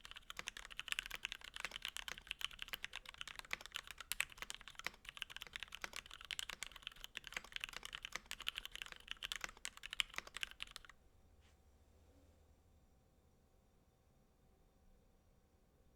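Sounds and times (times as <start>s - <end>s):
typing on mechanical keyboard: 0.0s - 11.0s.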